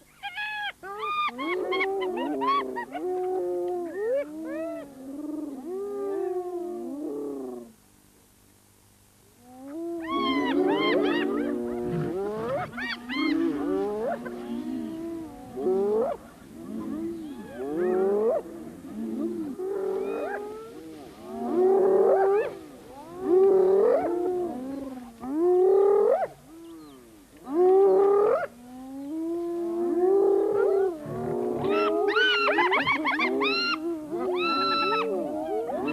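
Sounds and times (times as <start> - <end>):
hyenas whooping and yelling: 10.0 - 26.9, 29.9 - 35.9
lion growls: 10.1 - 26.1.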